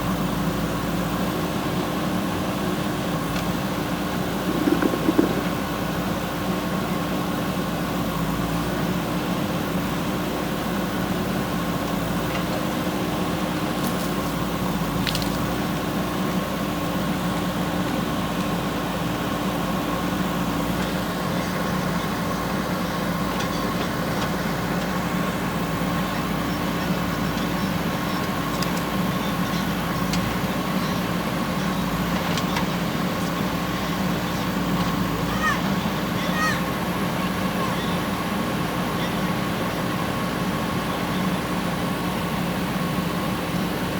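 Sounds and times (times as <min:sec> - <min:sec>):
diesel engine running: 0:00.0 - 0:43.9
faint clicks and knocks: 0:04.5 - 0:05.5.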